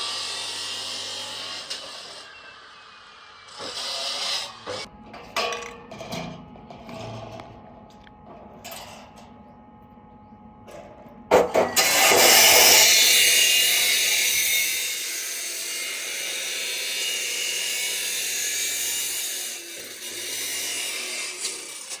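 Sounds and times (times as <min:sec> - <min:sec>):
power tool hissing on material: 0:00.0 - 0:04.9, 0:11.8 - 0:22.0.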